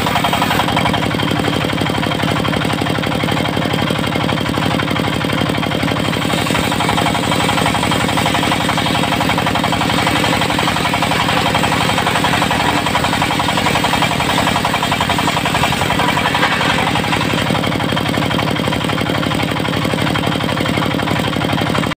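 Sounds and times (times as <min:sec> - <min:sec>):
saw hiss: 0:00.0 - 0:01.0, 0:06.1 - 0:17.8
diesel engine knocking clatter: 0:00.0 - 0:22.0.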